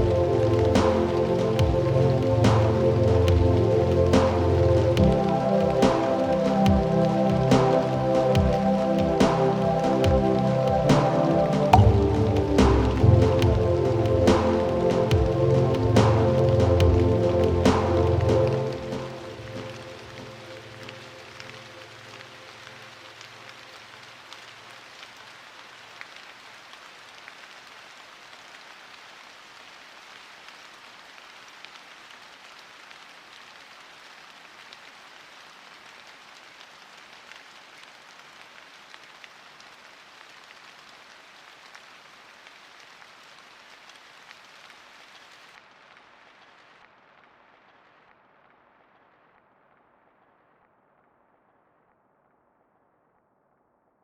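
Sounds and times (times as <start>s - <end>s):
falling water hiss: 0.0s - 48.1s.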